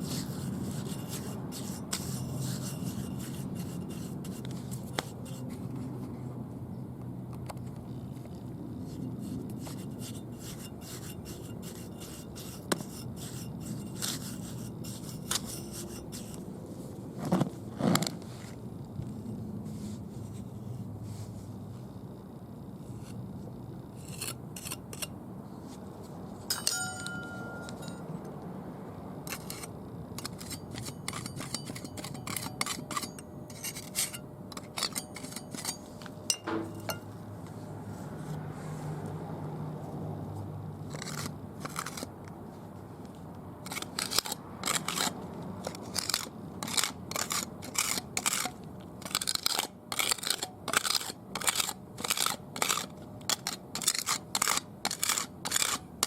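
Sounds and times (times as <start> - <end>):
putty knife scraping and tapping: 0.1 - 5.6, 8.9 - 16.4, 29.3 - 37.1, 45.9 - 55.8.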